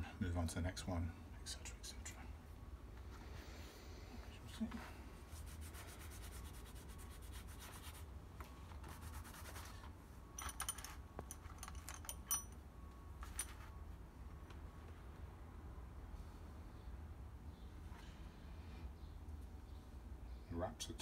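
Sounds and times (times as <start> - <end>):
faint handling noise: 9.7 - 15.0
metal bolts clinking together: 10.4 - 12.6.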